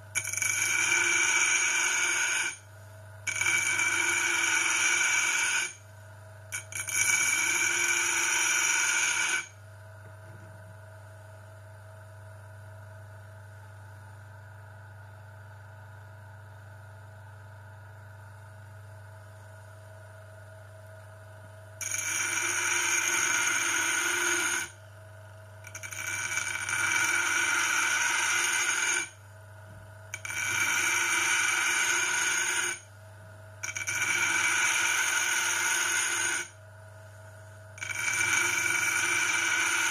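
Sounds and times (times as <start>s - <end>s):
metal grinding on wheel: 25.7s - 29.1s, 33.6s - 36.5s, 37.8s - 39.9s.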